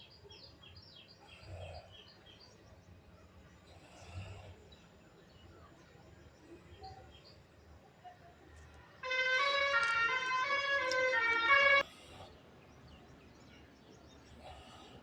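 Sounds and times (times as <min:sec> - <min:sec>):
musical vehicle horn tune: 0:09.0 - 0:11.8.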